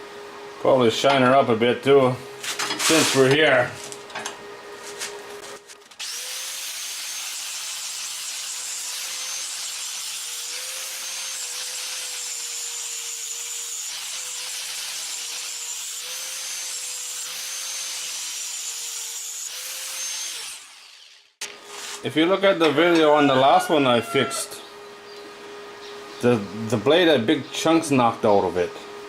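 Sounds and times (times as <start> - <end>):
electric grinder on steel: 5.9 - 21.4.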